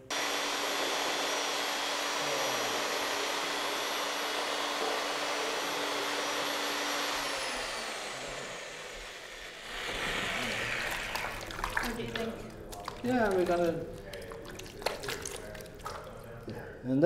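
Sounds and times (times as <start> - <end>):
power mixer motor whining: 0.0 - 11.6.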